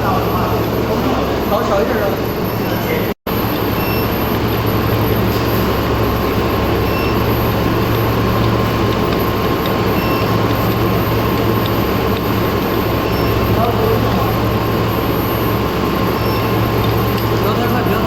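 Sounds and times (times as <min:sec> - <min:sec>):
furnace machine hum and whine: 0:00.0 - 0:18.0.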